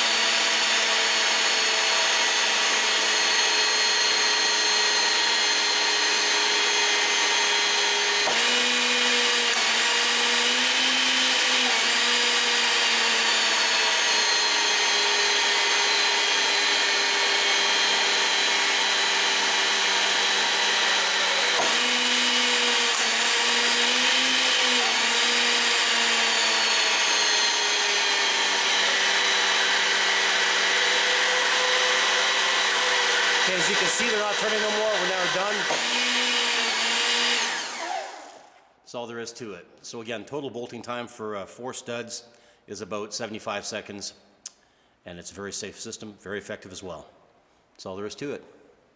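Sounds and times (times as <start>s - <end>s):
hydraulic pump running: 0.0s - 38.6s.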